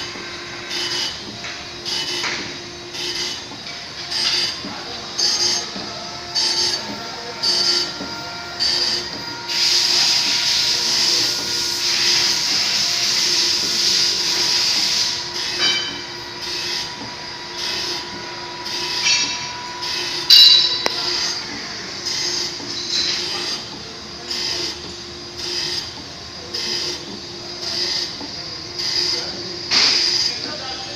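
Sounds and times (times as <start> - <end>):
air hissing: 0.0 - 15.6
compressor running: 0.0 - 30.9.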